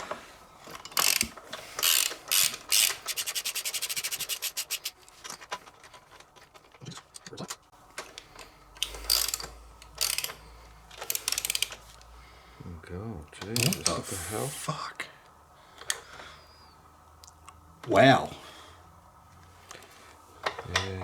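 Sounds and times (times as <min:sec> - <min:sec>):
socket ratchet clicking: 0:00.9 - 0:05.0, 0:08.8 - 0:10.4, 0:11.0 - 0:12.0, 0:13.5 - 0:14.0.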